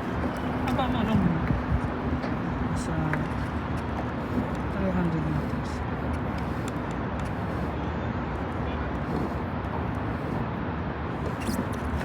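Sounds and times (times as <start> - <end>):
wind on microphone: 0.0 - 7.8.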